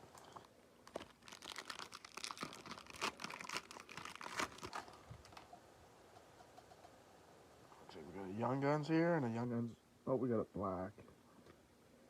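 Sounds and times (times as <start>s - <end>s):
wrapper tearing and crinkling: 0.8s - 5.5s.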